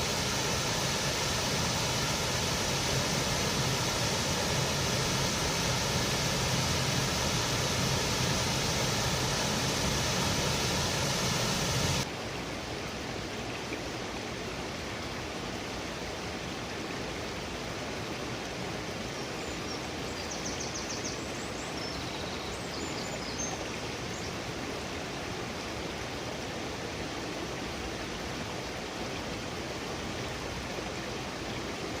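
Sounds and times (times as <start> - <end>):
waterfall rushing: 0.0 - 12.2.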